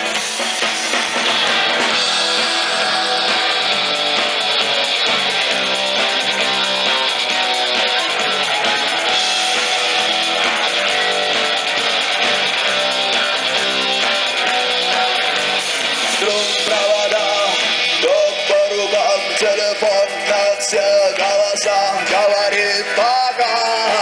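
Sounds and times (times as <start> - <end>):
strummed guitar chords: 0.0 - 24.0
wavering lead guitar melody: 0.0 - 24.0.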